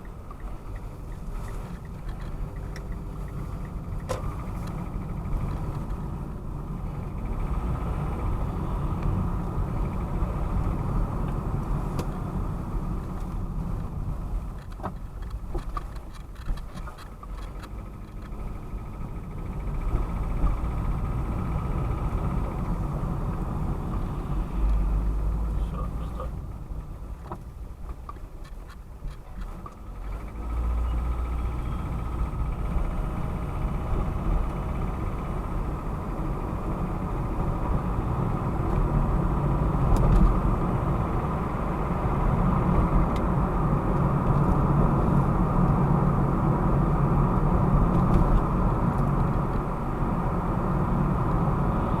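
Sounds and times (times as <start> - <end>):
car engine running with knock: 0.0 - 52.0.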